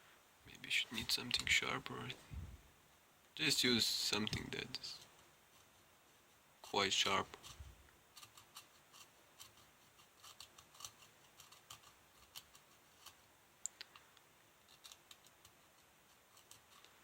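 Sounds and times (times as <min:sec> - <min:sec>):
sharp tool scratching circuit board: 0:08.2 - 0:13.2.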